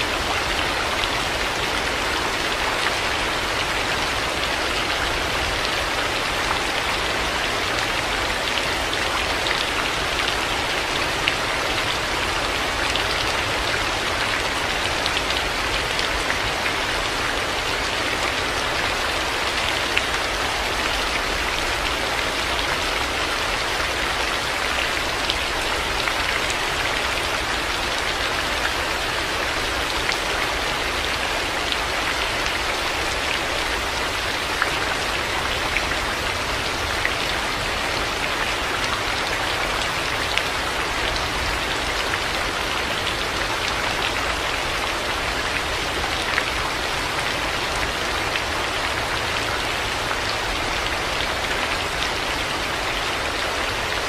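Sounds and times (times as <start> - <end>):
heavy rain falling: 0.0 - 54.0.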